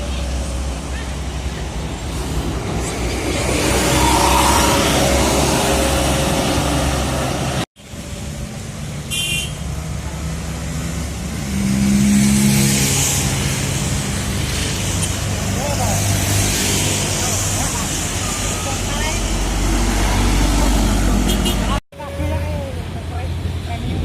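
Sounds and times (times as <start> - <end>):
diesel traffic passing: 0.0 - 24.0.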